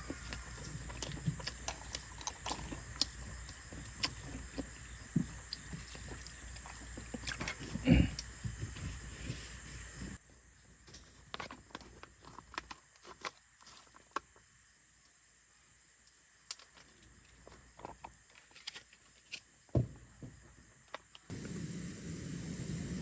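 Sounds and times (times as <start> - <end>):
steady hiss: 0.0 - 11.3, 19.3 - 23.0.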